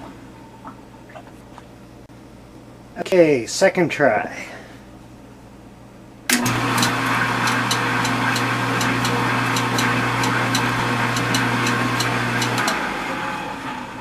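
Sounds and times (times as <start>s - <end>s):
dishwasher motor humming: 6.3s - 14.0s.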